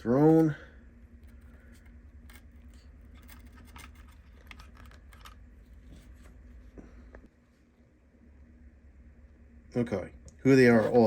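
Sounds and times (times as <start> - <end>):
low steady hum: 0.0 - 11.0
plastic toys clicking and scraping: 1.7 - 5.4.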